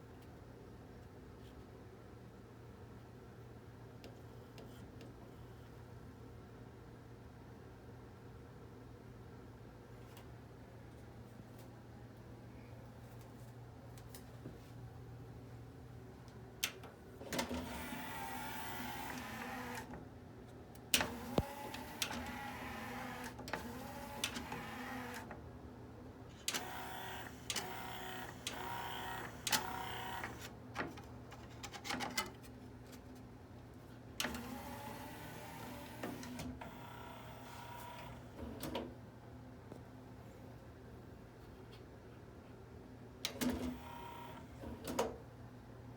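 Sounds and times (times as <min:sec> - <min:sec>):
cd changer mechanism whirring: 0:16.6 - 0:20.0, 0:20.9 - 0:25.4, 0:26.3 - 0:31.0, 0:34.2 - 0:38.9, 0:43.2 - 0:45.2.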